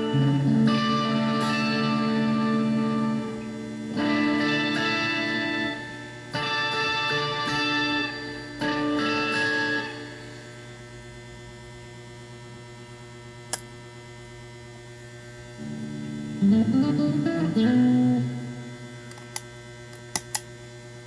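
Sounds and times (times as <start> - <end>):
electric guitar notes: 0.0 - 10.4, 15.6 - 19.4
steady mains hum: 0.0 - 21.0.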